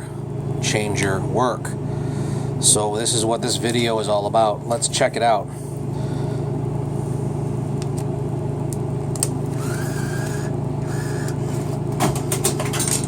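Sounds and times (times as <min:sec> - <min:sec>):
steady hum: 0:00.0 - 0:13.0
bill acceptor motor whirring: 0:09.0 - 0:13.0.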